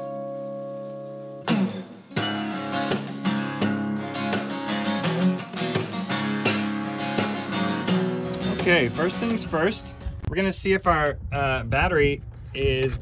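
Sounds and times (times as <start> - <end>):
strummed acoustic guitar: 0.0 - 10.2.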